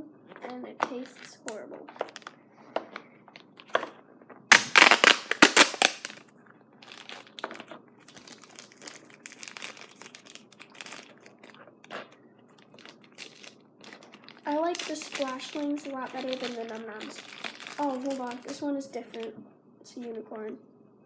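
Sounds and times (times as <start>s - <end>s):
plastic packaging tearing and crinkling: 4.5s - 19.3s.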